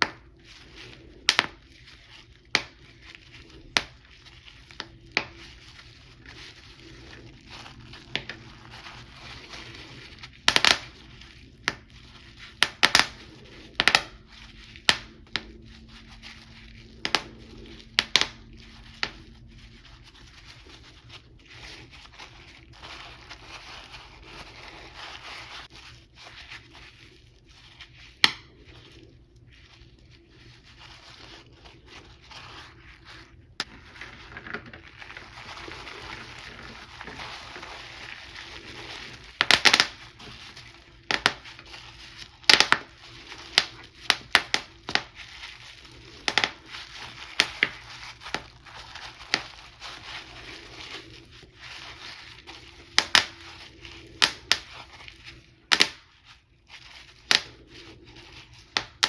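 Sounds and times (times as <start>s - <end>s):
bubble wrap bubbles popping: 0.0s - 59.0s
bubble wrap crinkling: 0.0s - 59.0s.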